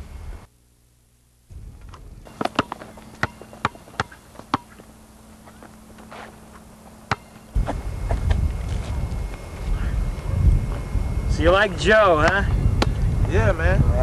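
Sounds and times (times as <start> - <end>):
basketball bouncing on court: 2.3 - 4.9, 7.0 - 7.4.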